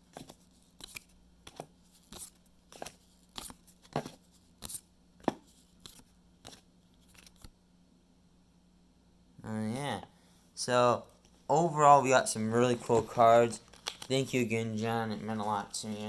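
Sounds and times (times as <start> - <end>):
cards sliding off a stack: 0.1 - 7.5.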